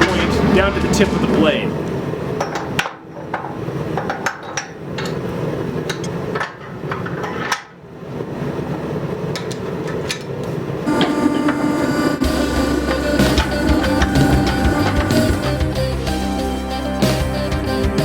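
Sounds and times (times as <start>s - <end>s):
steel clanking and knocking: 0.0s - 5.2s, 10.9s - 15.8s
steady background rush: 0.0s - 6.0s, 10.4s - 16.6s.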